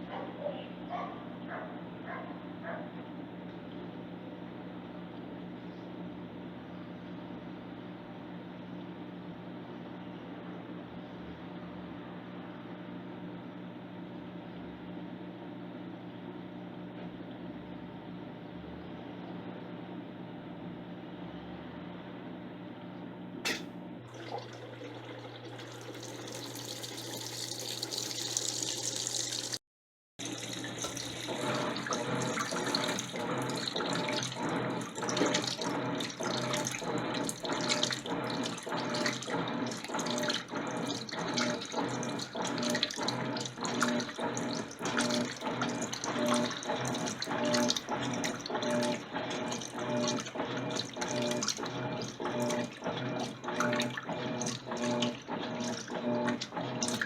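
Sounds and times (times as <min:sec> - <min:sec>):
washing machine hum: 0:00.0 - 0:29.6, 0:30.2 - 0:57.0
water churning back and forth: 0:30.2 - 0:57.0.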